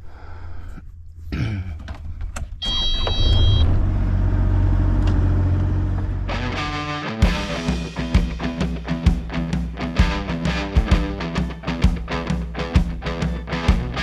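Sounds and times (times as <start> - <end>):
vehicle engine rumbling: 3.6 - 6.6.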